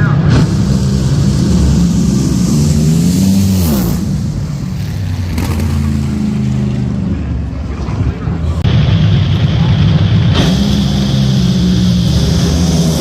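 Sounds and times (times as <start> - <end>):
race car engine: 0.0 - 13.0.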